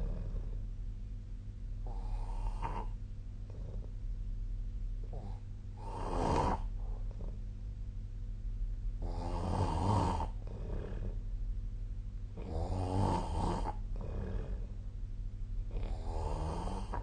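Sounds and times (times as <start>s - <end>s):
person snoring: 1.8s - 3.9s, 5.0s - 7.4s, 9.0s - 11.2s, 12.4s - 14.7s, 15.7s - 17.0s.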